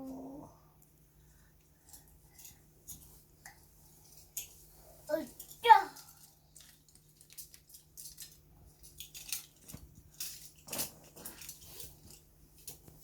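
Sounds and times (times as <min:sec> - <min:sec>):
small hard objects knocking together: 0:05.9 - 0:11.6.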